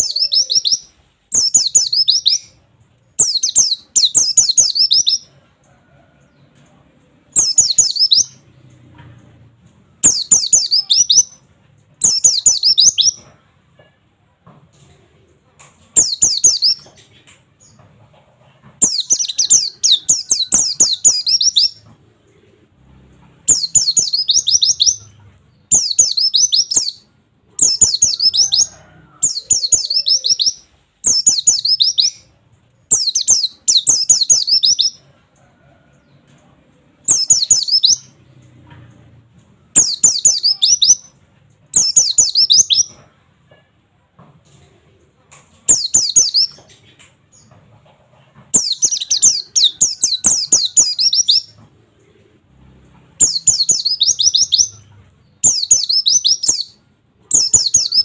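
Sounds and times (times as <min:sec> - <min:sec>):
bird singing rapid phrases: 0:00.0 - 0:05.4, 0:07.3 - 0:13.3, 0:15.9 - 0:17.8, 0:18.8 - 0:22.0, 0:23.3 - 0:35.1, 0:37.0 - 0:38.3, 0:39.7 - 0:43.0, 0:45.6 - 0:47.6, 0:48.5 - 0:51.6, 0:53.2 - 0:58.0.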